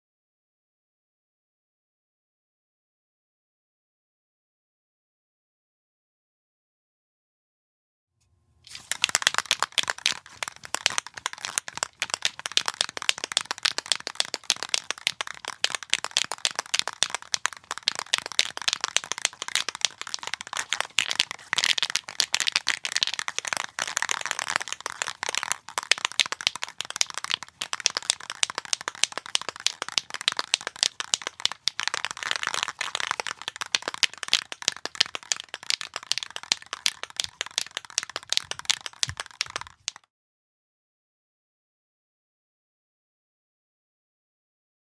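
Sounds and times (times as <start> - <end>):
spray can ball rattling: 8.7 - 40.0.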